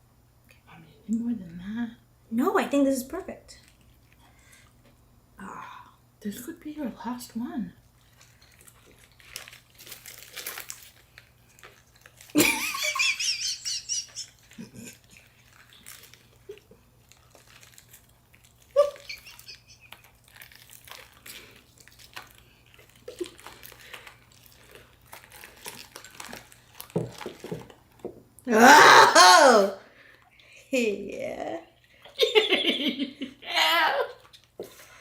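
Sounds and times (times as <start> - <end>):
soft chewing: 3.6 - 5.1, 7.8 - 12.4, 14.0 - 28.4, 34.1 - 35.0
rice paper crinkling: 7.9 - 28.1.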